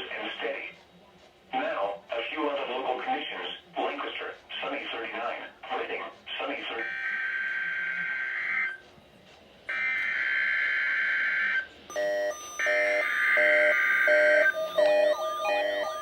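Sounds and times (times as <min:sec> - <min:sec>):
alarm beeps: 0:09.7 - 0:16.0.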